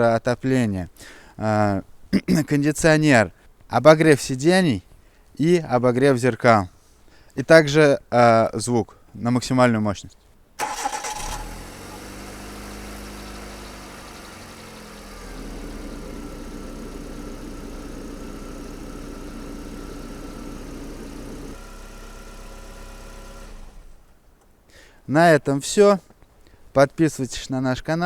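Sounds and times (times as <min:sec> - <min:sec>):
car engine starting and idling: 0:10.6 - 0:24.2.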